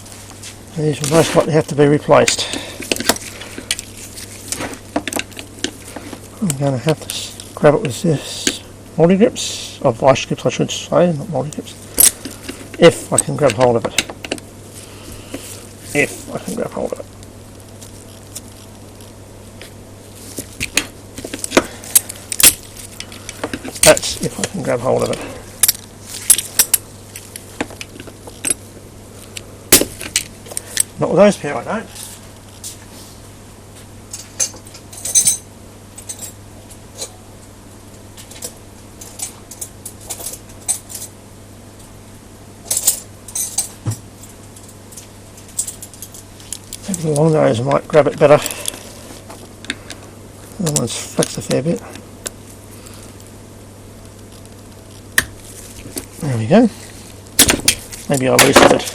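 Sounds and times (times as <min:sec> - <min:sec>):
metal tools clinking: 0:34.1 - 0:36.4.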